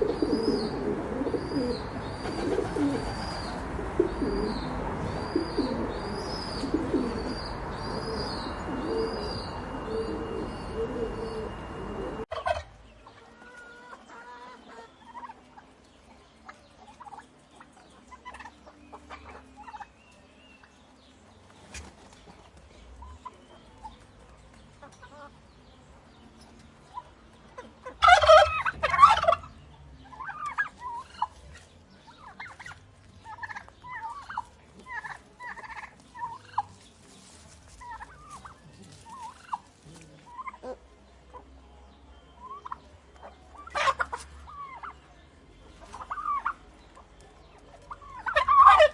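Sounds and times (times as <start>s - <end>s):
turkey gobbling: 9.9s - 15.4s, 18.1s - 19.9s, 27.0s - 31.4s, 32.2s - 36.7s, 37.8s - 41.5s, 42.4s - 45.0s, 45.8s - 47.0s, 47.7s - 48.9s.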